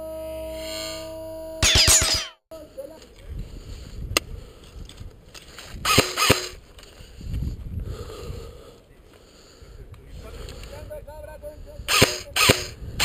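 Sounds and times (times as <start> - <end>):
wind on microphone: 3.2 - 8.7, 10.7 - 13.0
airsoft gun shots: 5.9 - 6.5, 11.9 - 12.7.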